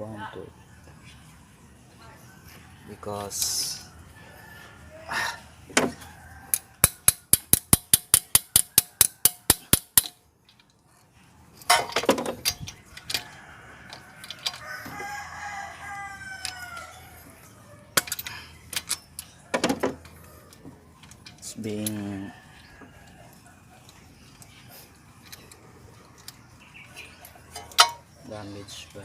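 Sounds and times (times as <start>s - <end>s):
rooster crowing: 2.4s - 7.1s, 12.8s - 18.6s, 19.4s - 24.0s
socket ratchet clicking: 6.5s - 10.2s.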